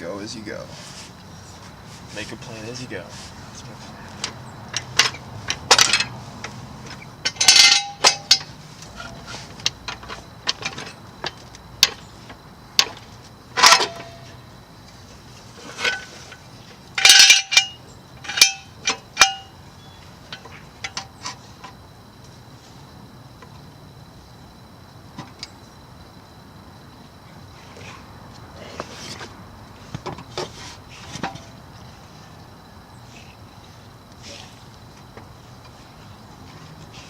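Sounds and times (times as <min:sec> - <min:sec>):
metallic clanks of steel parts: 0:04.2 - 0:12.0, 0:12.8 - 0:14.4, 0:15.6 - 0:19.6, 0:20.3 - 0:21.8, 0:30.1 - 0:31.6.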